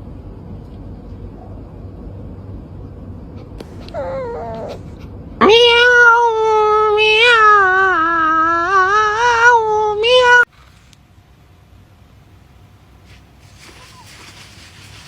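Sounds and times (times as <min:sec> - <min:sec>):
cat meowing and yowling: 0:05.4 - 0:10.5.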